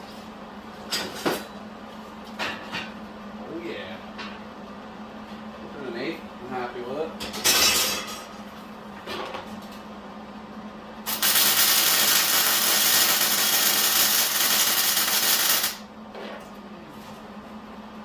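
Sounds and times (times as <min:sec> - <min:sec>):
welding arc: 0:11.0 - 0:15.8.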